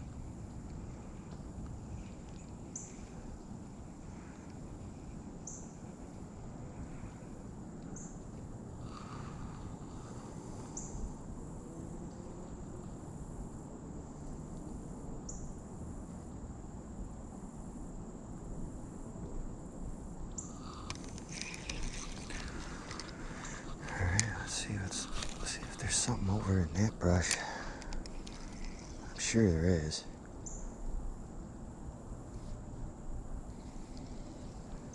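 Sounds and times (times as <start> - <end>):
crickets trilling: 0.0 - 34.9
outdoor noise: 0.0 - 34.9
sharp clicks and rustles: 20.7 - 26.3, 27.2 - 29.0.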